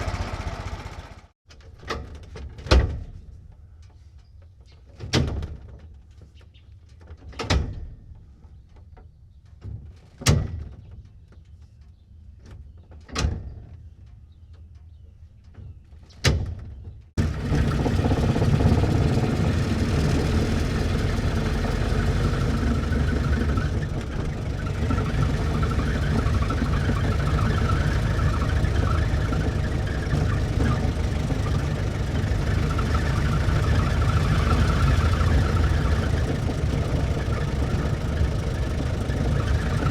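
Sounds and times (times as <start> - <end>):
truck engine idling: 0.0 - 1.3, 17.2 - 39.9.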